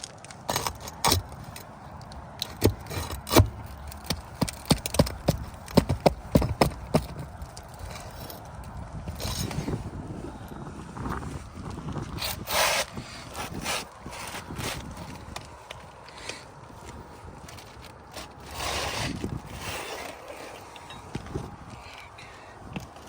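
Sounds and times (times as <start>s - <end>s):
tools clicking and knocking: 0.5s - 9.7s.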